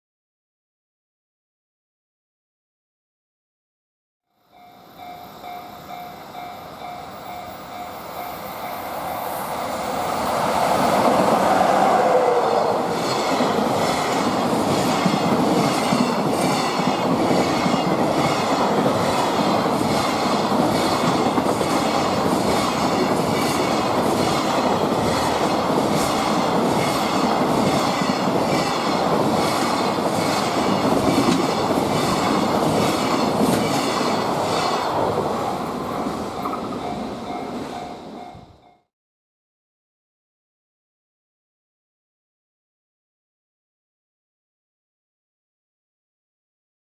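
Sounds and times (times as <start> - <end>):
electric locomotive passing: 4.4 - 38.8
wheels clacking over rail joints: 12.8 - 38.3.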